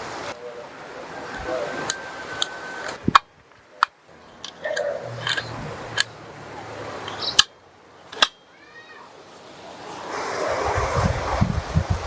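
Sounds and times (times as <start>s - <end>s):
air rifle clicks and snaps: 2.9s - 6.1s, 8.1s - 8.4s.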